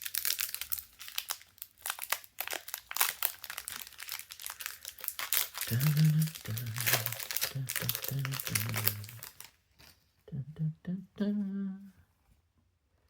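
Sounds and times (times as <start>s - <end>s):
wrappers crinkling and tearing: 0.0s - 10.0s
person humming: 5.6s - 9.5s, 10.3s - 12.0s.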